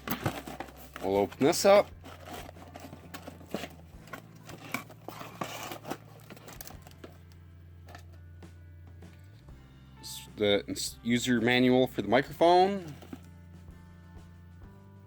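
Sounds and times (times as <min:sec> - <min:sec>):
packaging crinkling and rustling: 0:00.0 - 0:08.0.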